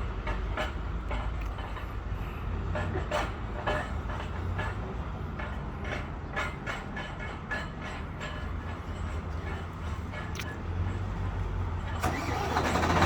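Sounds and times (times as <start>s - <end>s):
diesel engine idling: 12.0s - 13.0s.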